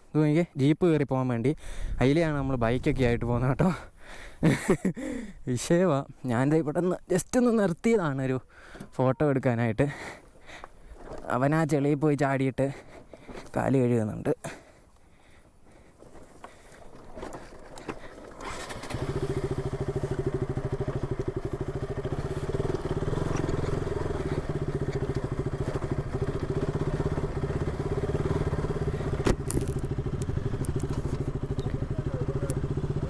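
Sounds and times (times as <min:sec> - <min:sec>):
motorcycle engine idling: 0:15.5 - 0:33.0.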